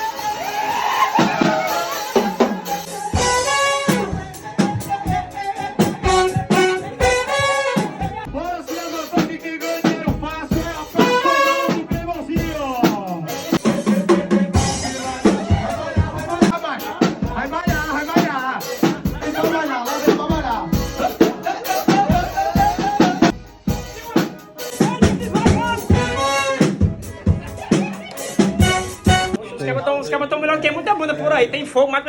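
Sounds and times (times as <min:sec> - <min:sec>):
band with brass and drums: 0:00.0 - 0:29.4
drums striking: 0:00.0 - 0:29.4
person singing: 0:01.2 - 0:11.9, 0:12.8 - 0:17.2, 0:18.1 - 0:23.4.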